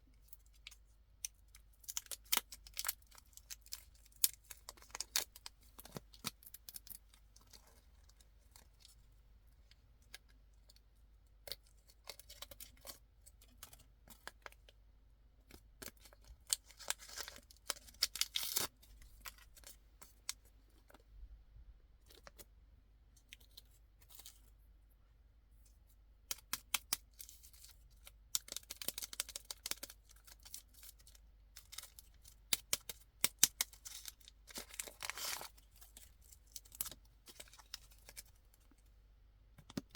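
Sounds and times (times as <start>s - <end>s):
plastic wrappers crinkling and tearing: 16.4s - 19.7s, 28.4s - 38.7s.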